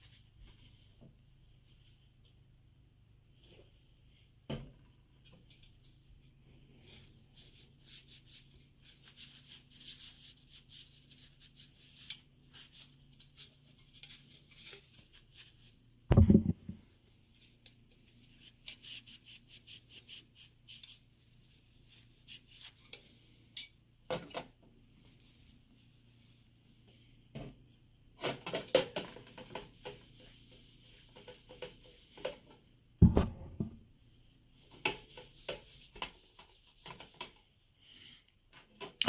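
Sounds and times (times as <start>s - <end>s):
heavy thump: 16.1s - 16.8s, 33.0s - 33.8s.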